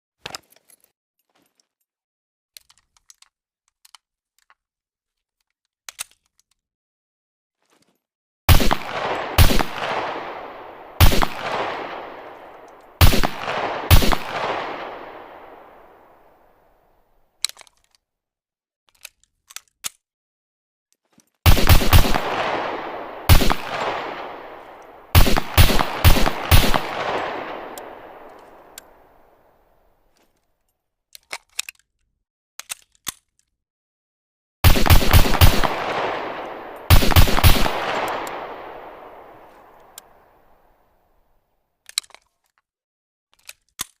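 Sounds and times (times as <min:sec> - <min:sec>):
pistol shots echoing: 0:08.5 - 0:16.8, 0:21.5 - 0:29.4, 0:34.6 - 0:40.4.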